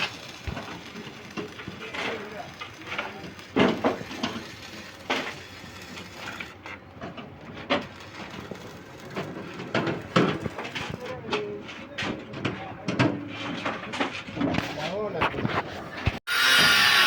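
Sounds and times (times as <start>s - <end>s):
steady background noise: 0.0s - 16.1s
hand tool knocks and scrapes: 9.2s - 16.2s.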